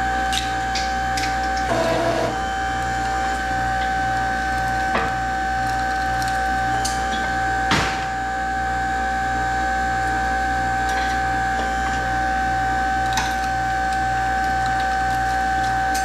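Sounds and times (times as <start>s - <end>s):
electric hydraulic pump whining: 0.0s - 5.5s.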